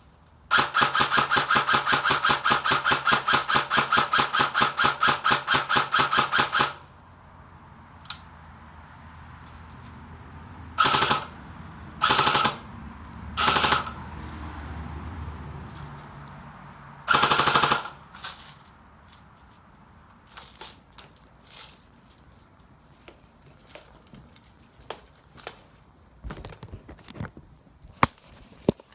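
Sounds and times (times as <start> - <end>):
airsoft gun firing bursts: 0.5 - 6.8, 10.8 - 11.3, 12.0 - 12.7, 13.4 - 14.0, 17.1 - 18.0.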